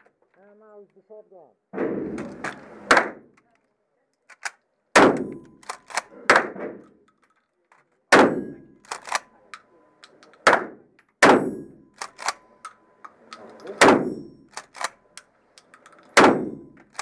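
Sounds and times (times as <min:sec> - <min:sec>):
loud shotgun shots: 0:01.8 - 0:03.3, 0:04.9 - 0:06.8, 0:08.1 - 0:09.2, 0:10.4 - 0:12.4, 0:13.8 - 0:14.9, 0:16.1 - 0:17.0.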